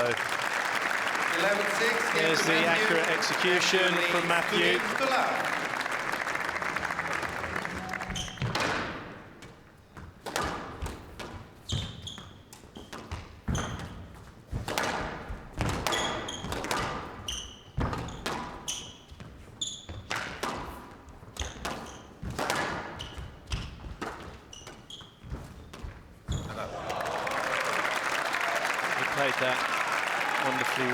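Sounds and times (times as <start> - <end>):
applause: 0.0 - 8.9, 26.5 - 30.9
shoes squeaking on court floor: 7.4 - 8.8, 11.6 - 14.4, 15.9 - 20.2, 21.4 - 22.3, 22.9 - 26.6
squash ball cracking off racquets: 12.7 - 18.7, 21.4 - 24.6.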